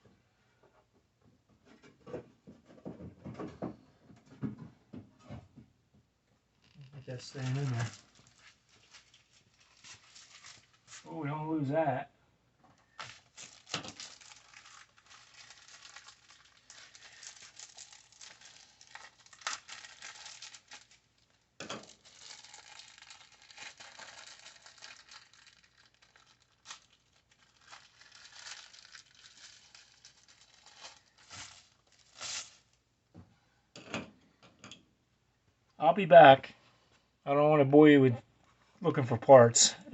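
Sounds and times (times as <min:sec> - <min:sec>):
rustling and crinkling: 0:06.5 - 0:11.1, 0:12.6 - 0:34.1.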